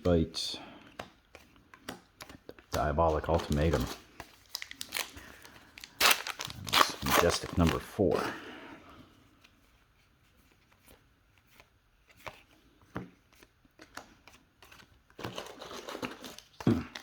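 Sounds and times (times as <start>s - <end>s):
cards rustling together: 0.0s - 8.4s, 9.1s - 17.0s
cards tapped and flicked: 0.8s - 4.3s, 10.6s - 15.4s.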